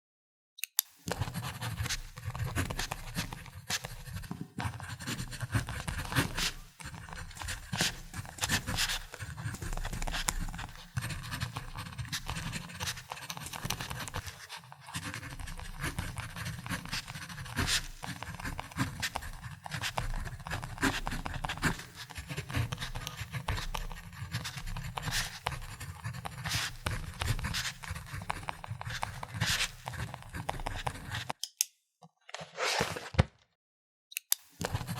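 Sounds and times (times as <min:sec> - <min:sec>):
pen click: 0:00.6 - 0:04.2
pen scratching on paper: 0:01.1 - 0:31.4, 0:34.6 - 0:34.9.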